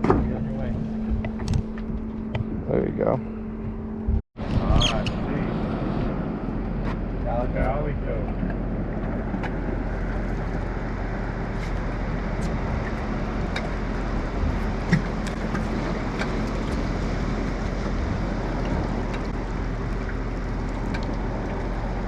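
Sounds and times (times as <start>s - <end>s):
boat engine hum: 0.0s - 22.0s
water washing: 8.6s - 22.0s.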